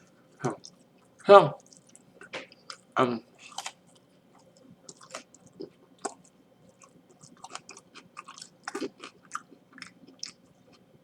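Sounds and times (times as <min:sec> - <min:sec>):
person chewing crunchy food: 0:00.3 - 0:11.0.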